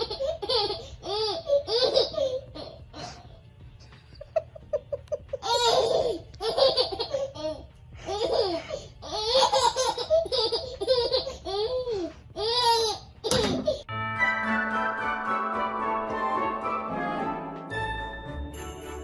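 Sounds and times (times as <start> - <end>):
young child laughing: 0.0 - 3.0, 4.1 - 13.8.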